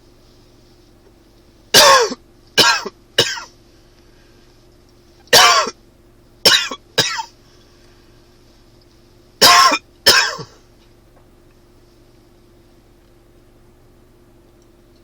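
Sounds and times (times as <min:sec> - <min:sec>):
man coughing: 0:01.7 - 0:03.5, 0:05.3 - 0:05.8, 0:06.4 - 0:07.3, 0:09.4 - 0:10.6.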